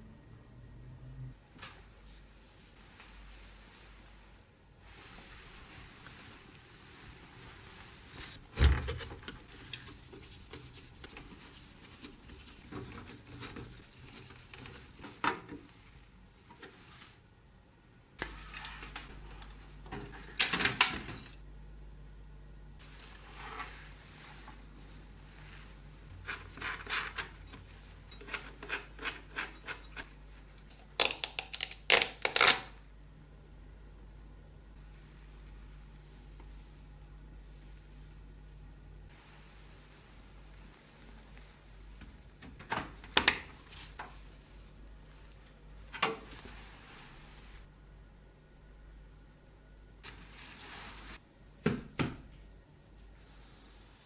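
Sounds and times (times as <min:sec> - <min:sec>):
rubbing strokes: 0:09.4 - 0:15.8.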